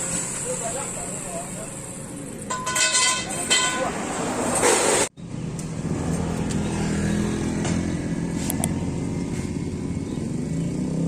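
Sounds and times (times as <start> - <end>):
motorcycle engine running: 5.2 - 11.0.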